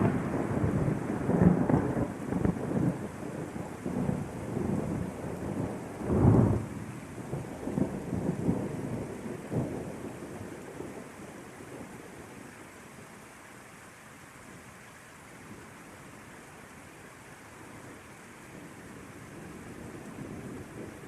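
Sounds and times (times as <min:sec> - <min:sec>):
thunder rumbling: 0:00.0 - 0:12.1
steady rain: 0:00.0 - 0:21.0.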